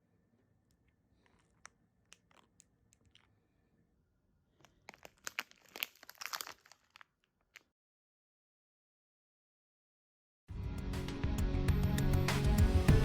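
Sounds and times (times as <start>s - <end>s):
faint crackles: 4.6s - 7.7s
dog tearing crinkly material: 4.9s - 7.0s.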